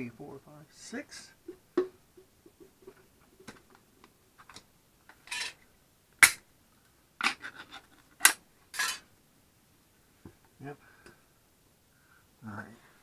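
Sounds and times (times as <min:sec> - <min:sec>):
sharp knock: 0:01.5 - 0:03.0.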